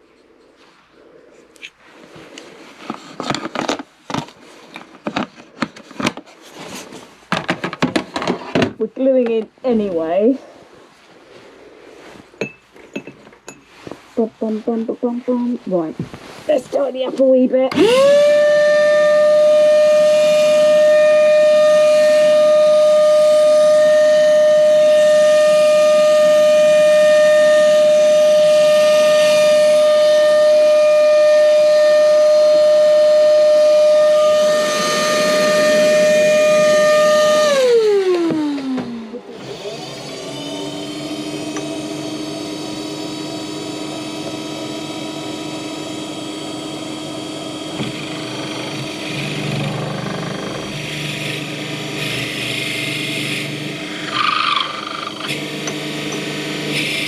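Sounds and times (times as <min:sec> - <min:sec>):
power tool motor whining: 0:17.2 - 0:57.0
quieter machine running low: 0:17.8 - 0:38.2.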